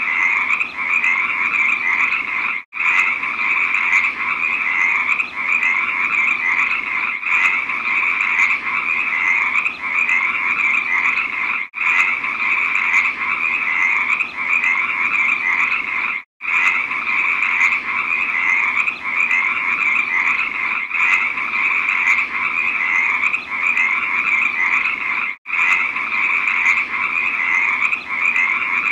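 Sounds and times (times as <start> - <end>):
frogs croaking chorus: 0.0 - 28.9.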